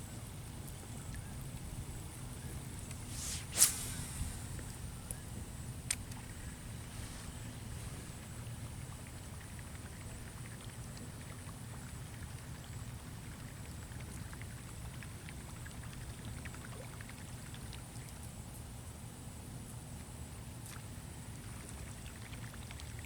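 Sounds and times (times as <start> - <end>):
small water sounds: 0.2 - 18.6, 20.6 - 23.0
wind rumbling on microphone: 1.0 - 10.2.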